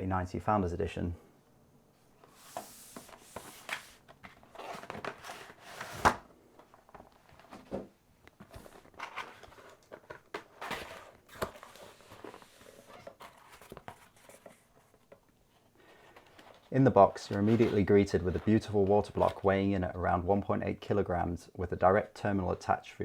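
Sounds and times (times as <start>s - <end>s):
cardboard packaging rustling: 2.3s - 19.5s.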